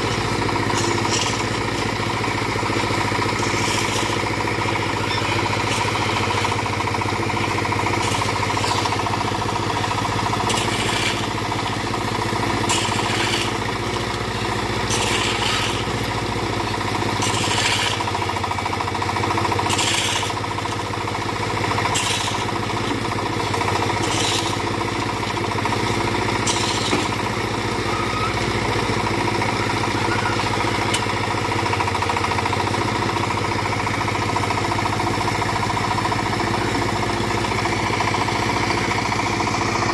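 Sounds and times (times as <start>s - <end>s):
backhoe engine running: 0.0s - 39.9s
scraping and clattering bursts: 0.1s - 11.8s, 12.5s - 18.2s, 19.6s - 20.8s, 21.9s - 25.4s, 26.4s - 27.2s.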